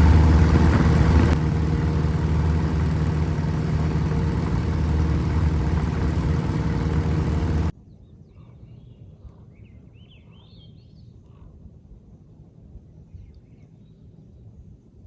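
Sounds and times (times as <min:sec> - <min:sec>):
airplane piston engine running: 0:00.0 - 0:07.7
faint birds chirping: 0:00.0 - 0:07.7.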